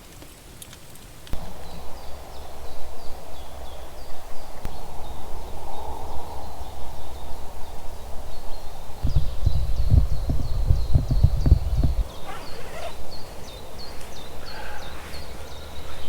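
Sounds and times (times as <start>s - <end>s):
small bird calling: 9.0s - 16.0s.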